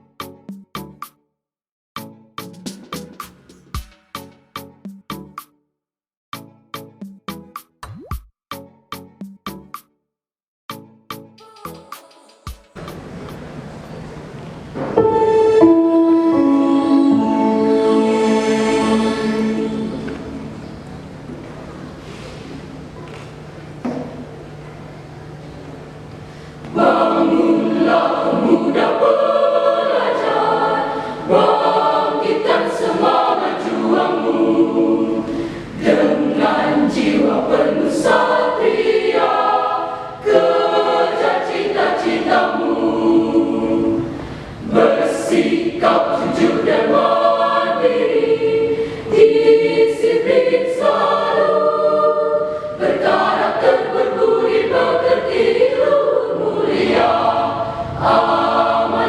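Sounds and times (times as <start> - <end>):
choir singing: 15.0 - 21.2, 26.7 - 59.0.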